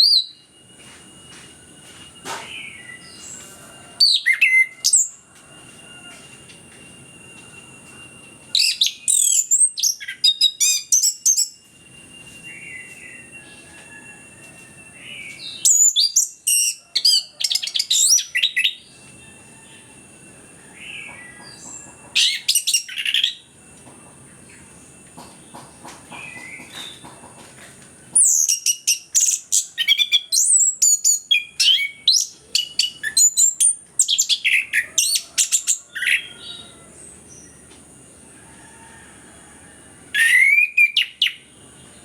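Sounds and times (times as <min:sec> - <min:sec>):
steady high tone: 0:00.0 - 0:26.8
thrush singing whistled phrases: 0:40.2 - 0:41.4.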